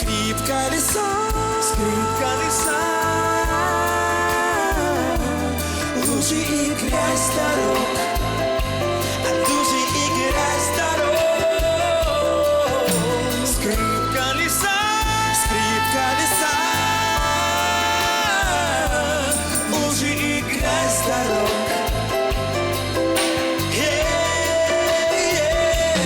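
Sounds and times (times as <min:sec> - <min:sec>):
man singing: 0:00.0 - 0:26.0
pop-rock band playing: 0:00.0 - 0:26.0.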